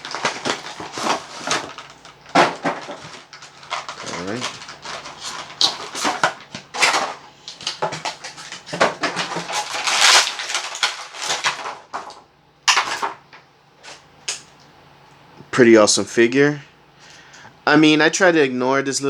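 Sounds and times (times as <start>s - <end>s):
plastic toy clattering: 0.0s - 13.2s
plastic packaging rustling: 0.0s - 14.1s.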